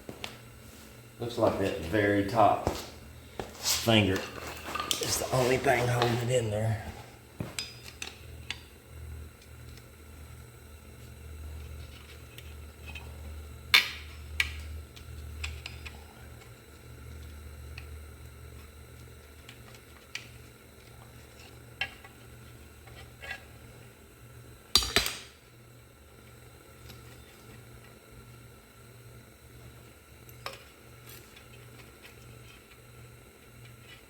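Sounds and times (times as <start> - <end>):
low steady hum: 0.0 - 34.0.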